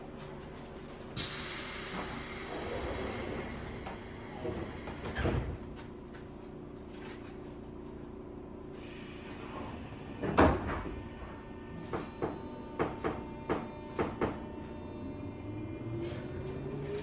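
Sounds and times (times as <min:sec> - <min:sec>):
compressed air hiss: 0:01.2 - 0:05.2
train equipment humming: 0:01.2 - 0:06.6.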